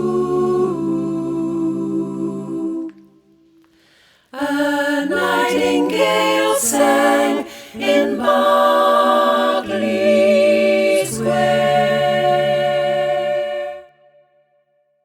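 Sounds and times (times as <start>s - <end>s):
woman singing close-harmony a cappella: 4.4s - 13.9s.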